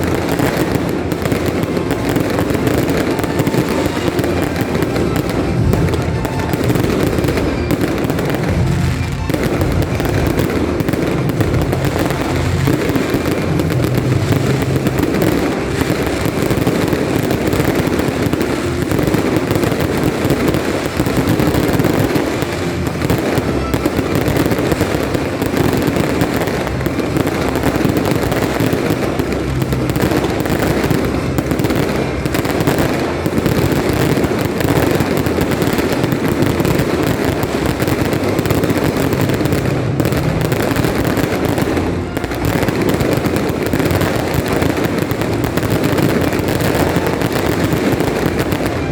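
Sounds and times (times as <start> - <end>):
fireworks bursting and crackling: 0.0 - 48.9
music: 0.0 - 48.9.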